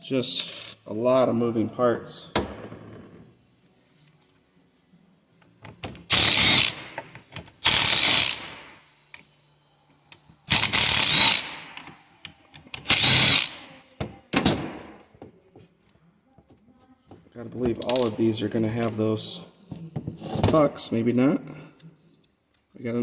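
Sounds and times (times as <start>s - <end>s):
cordless drill bursts: 6.1s - 7.0s, 7.6s - 8.7s, 10.5s - 11.7s, 12.9s - 13.7s.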